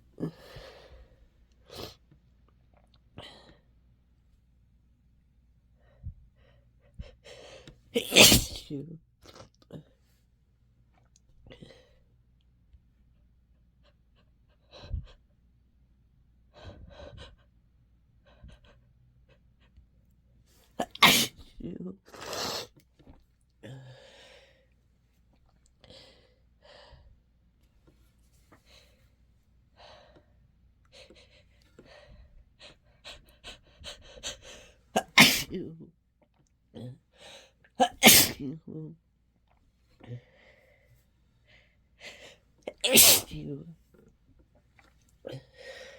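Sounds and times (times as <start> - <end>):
person sniffing: 20.8 - 21.4, 22.1 - 22.8, 34.3 - 35.5, 42.8 - 43.4.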